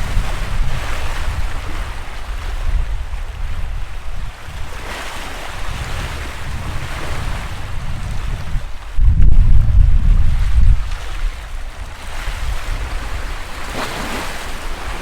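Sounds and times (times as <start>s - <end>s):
wind rumbling on microphone: 0.0s - 15.0s
sea waves washing in: 9.7s - 15.0s.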